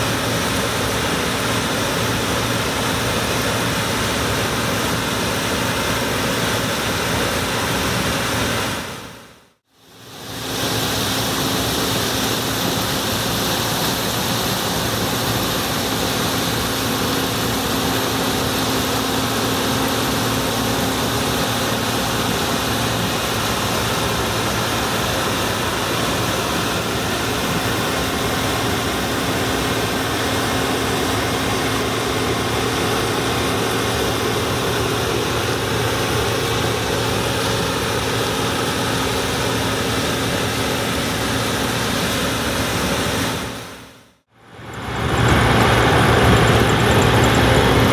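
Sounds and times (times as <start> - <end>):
combine harvester drone: 0.0 - 47.9.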